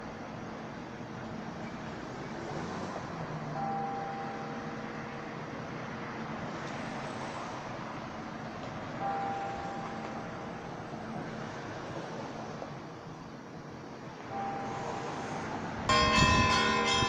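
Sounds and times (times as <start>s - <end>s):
city street traffic: 0.0s - 17.0s
church bell ringing: 14.4s - 17.0s.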